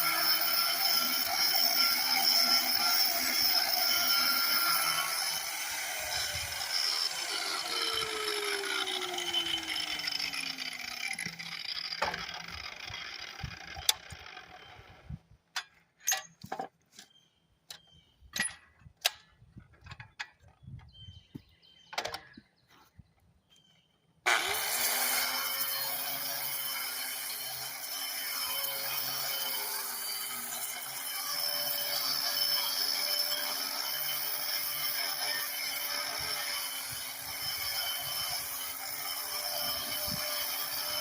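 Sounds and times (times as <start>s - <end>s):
grinder cutting log bark: 0.0s - 15.1s, 24.2s - 41.0s.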